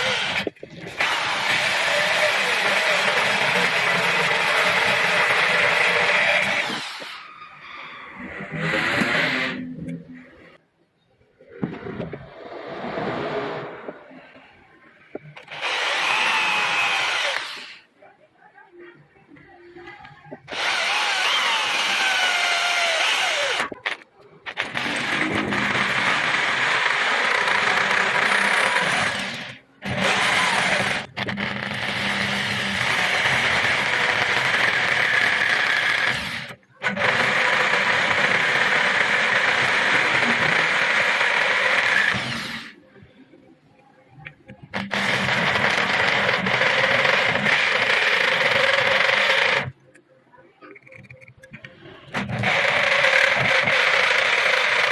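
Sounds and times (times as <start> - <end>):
electric drill with hole saw grinding: 0.0 - 9.8, 15.4 - 17.9, 20.5 - 42.8, 44.8 - 49.8, 52.1 - 54.9.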